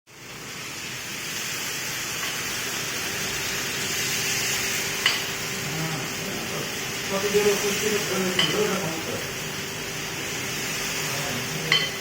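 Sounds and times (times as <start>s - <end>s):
food sizzling in oil: 0.1s - 12.0s.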